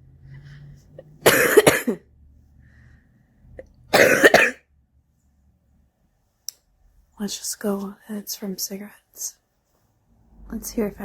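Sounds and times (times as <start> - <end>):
person coughing: 1.2 - 2.1, 3.9 - 4.6.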